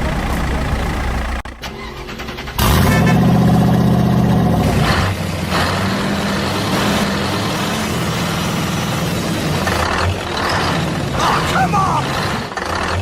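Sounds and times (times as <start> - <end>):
truck engine revving: 0.0 - 13.0.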